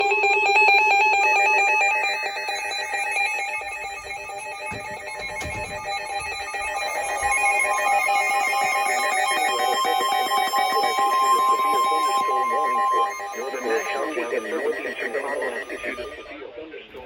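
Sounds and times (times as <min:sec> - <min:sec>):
steady alarm tone: 0:00.0 - 0:16.3
chirping alert tones: 0:03.3 - 0:16.3.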